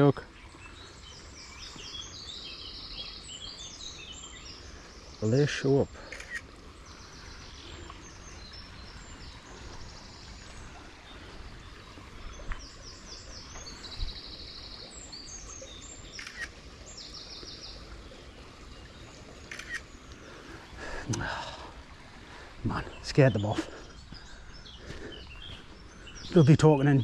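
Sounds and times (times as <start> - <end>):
songbirds singing: 0.0 - 27.0.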